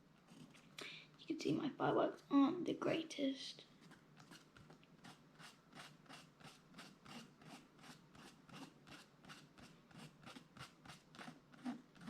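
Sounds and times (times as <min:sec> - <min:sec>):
hand tool scratching paper: 0:03.8 - 0:12.0.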